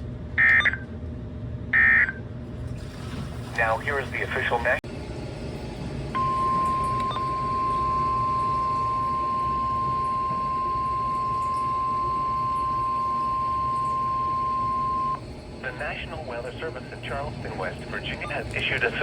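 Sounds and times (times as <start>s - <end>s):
steady loud alarm tone: 6.1s - 18.4s.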